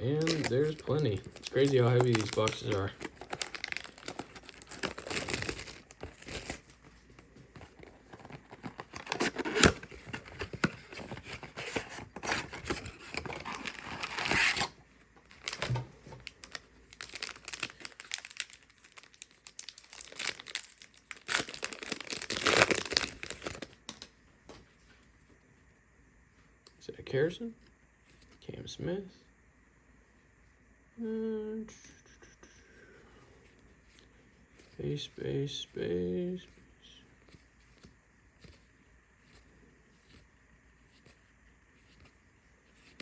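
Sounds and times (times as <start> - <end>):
card pack wrappers crinkling: 0.0 - 24.1.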